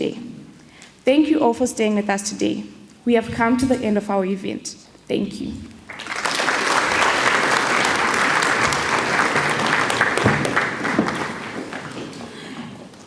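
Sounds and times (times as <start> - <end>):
audience applauding: 5.8 - 13.0.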